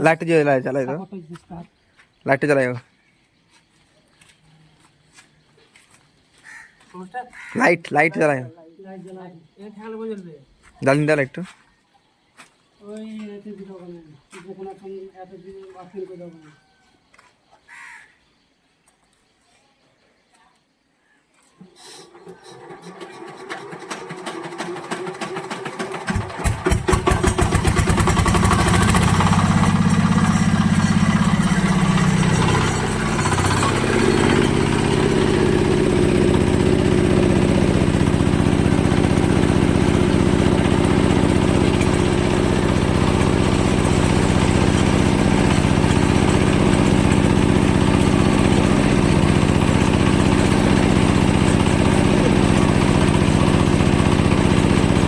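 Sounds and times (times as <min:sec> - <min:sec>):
engine starting and running: 0:21.6 - 0:55.0.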